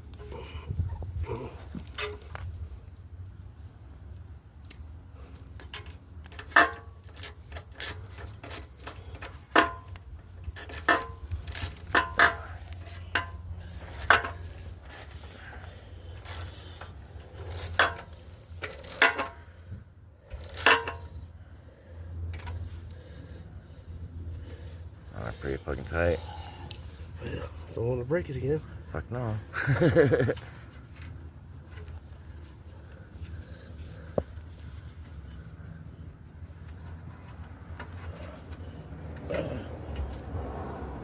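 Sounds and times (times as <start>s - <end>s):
hand tools clicking and knocking: 5.3s - 15.4s, 16.1s - 19.5s, 20.3s - 21.2s.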